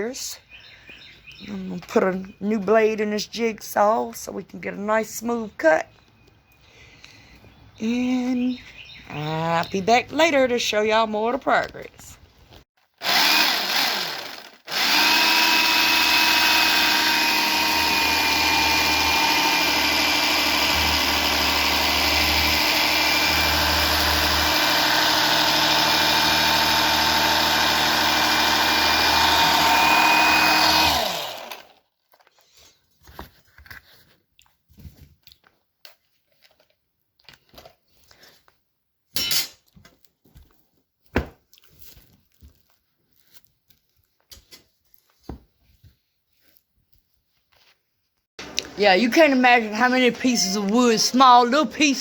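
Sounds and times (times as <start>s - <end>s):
jigsaw cutting plywood: 12.9s - 31.8s.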